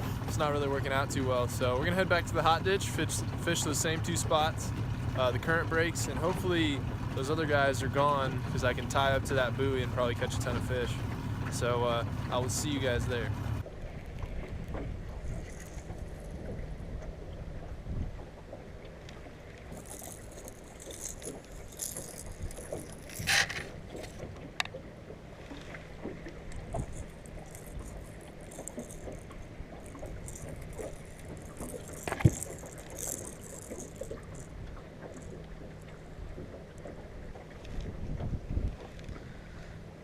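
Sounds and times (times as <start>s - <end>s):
boat engine hum: 0.0s - 40.0s
gear rattling: 15.2s - 16.6s, 19.7s - 24.7s, 26.4s - 35.8s.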